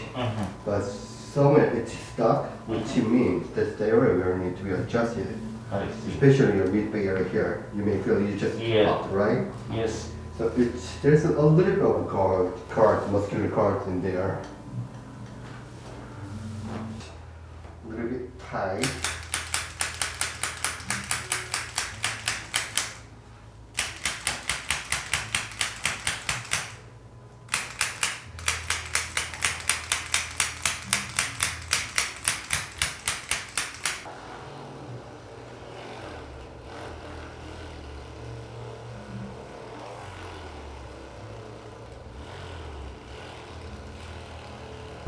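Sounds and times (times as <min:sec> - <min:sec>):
rapid mechanical clicking: 0:18.8 - 0:23.1, 0:23.7 - 0:34.1.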